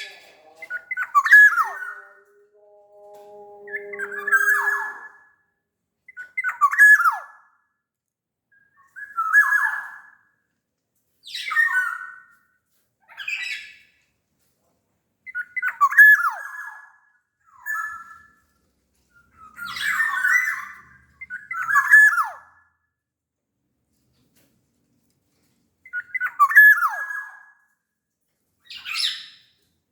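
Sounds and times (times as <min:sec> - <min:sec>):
bird whistling song: 0:00.0 - 0:05.3, 0:19.1 - 0:22.6, 0:25.8 - 0:27.6, 0:28.7 - 0:29.5.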